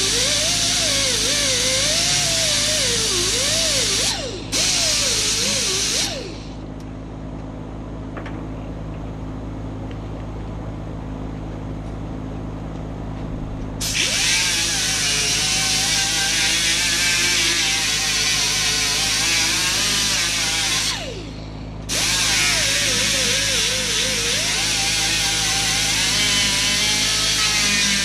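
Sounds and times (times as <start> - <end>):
electric grinder grinding metal chain: 0.0 - 6.6, 13.8 - 28.0.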